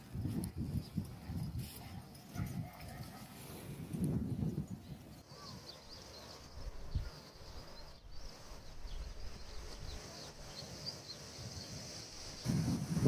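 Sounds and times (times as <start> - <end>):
faint birds chirping: 4.2 - 12.5.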